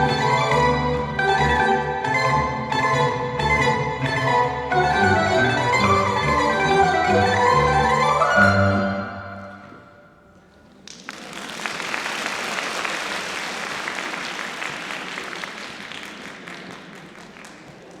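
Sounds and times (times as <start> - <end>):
audience applause: 10.7 - 18.0.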